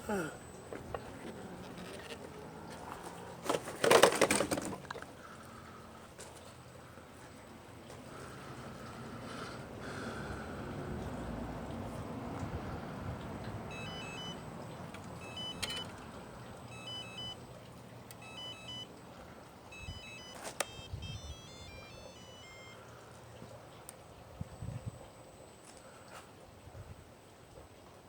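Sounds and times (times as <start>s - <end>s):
short electronic beeps: 13.7s - 17.6s, 18.2s - 19.0s, 19.7s - 23.0s.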